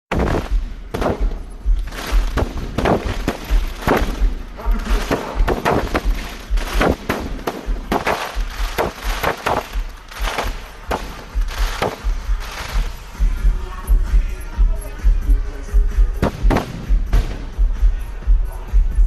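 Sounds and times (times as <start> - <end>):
fireworks bangs: 0.1 - 13.2, 16.2 - 17.6
deep low thumping: 0.1 - 19.0.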